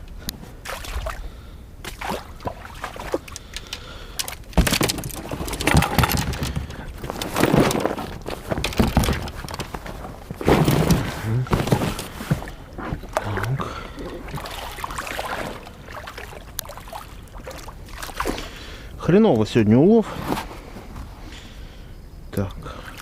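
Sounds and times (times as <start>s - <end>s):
fishing gear clicks and rustles: 1.9s - 18.6s.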